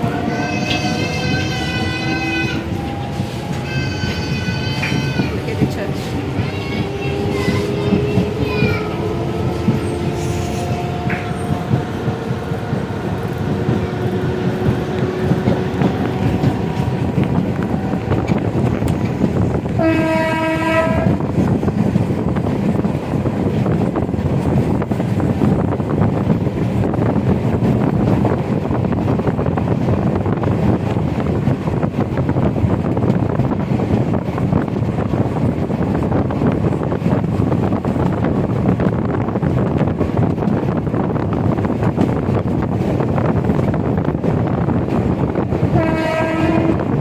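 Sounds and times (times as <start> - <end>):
train wheels rumbling on rails: 0.0 - 47.0
train horn: 0.1 - 6.1, 19.8 - 21.3, 45.7 - 47.0.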